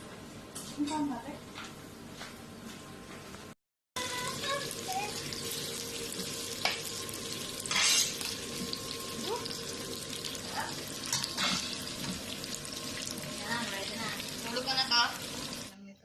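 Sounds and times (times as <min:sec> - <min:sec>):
steady watery hiss: 0:04.1 - 0:15.8.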